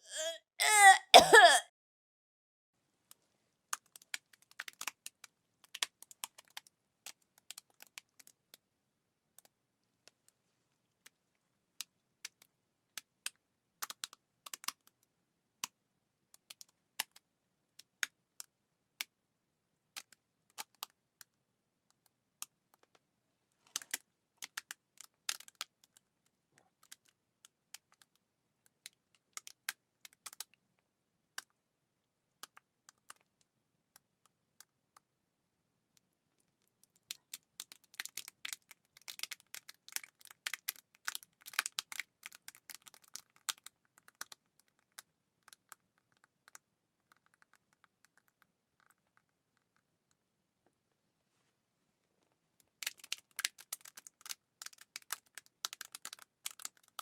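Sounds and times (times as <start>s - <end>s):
person retching: 0.0s - 1.6s.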